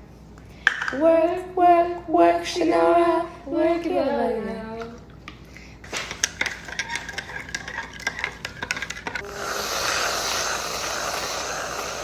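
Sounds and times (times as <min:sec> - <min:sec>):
steady hiss: 0:09.2 - 0:12.0.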